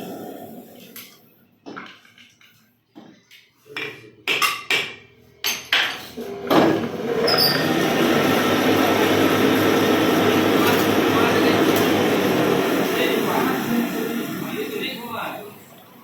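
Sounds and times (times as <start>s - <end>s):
lathe machine running: 6.3s - 16.0s.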